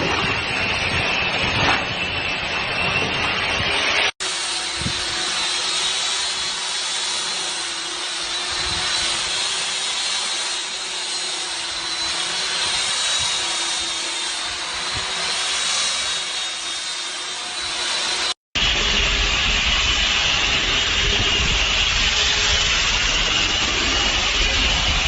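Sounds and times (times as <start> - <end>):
electric mixer motor whining: 0.0 - 25.0.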